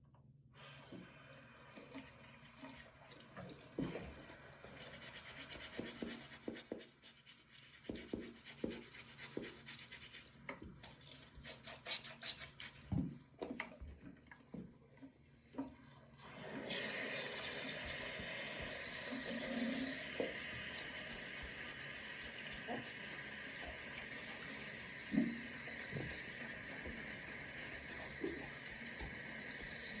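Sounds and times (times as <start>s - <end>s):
tap water running: 0.6s - 6.9s, 7.8s - 30.0s
brush scrubbing a shoe: 4.7s - 10.4s, 11.1s - 12.9s.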